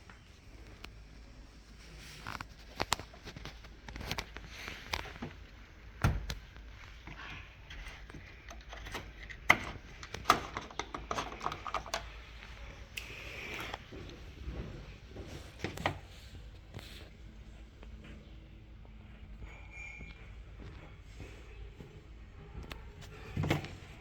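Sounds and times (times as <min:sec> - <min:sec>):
tools clicking and knocking: 0:07.7 - 0:12.2.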